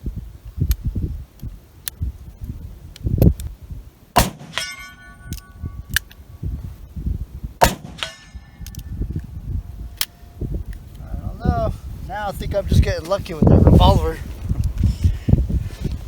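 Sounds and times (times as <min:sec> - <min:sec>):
revolver shots: 0:04.2 - 0:05.8, 0:07.6 - 0:08.6
metallic ring of steel plate: 0:04.2 - 0:05.9, 0:07.6 - 0:08.7.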